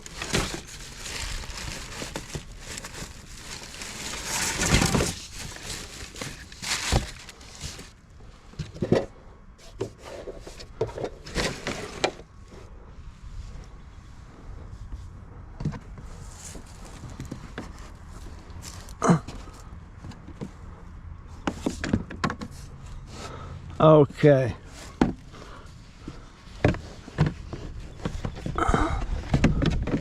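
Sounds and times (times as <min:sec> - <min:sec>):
rustling through junk: 0:00.0 - 0:12.6, 0:15.6 - 0:20.7, 0:24.5 - 0:30.0.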